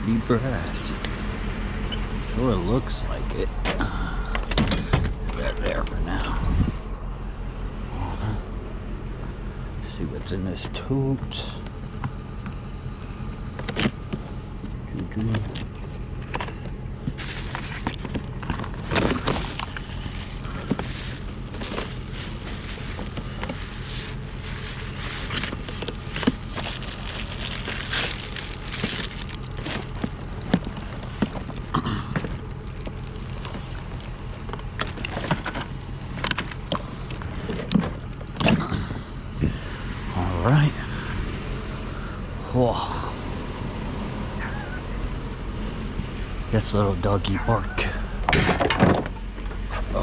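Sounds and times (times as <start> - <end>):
steady low hum: 0.0 - 50.0
clattering of scrap items: 15.3 - 38.8, 48.3 - 49.9.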